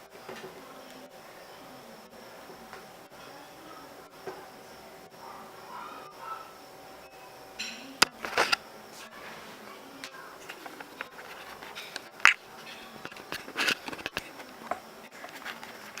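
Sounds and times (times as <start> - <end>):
packaging rustling: 8.1 - 16.0.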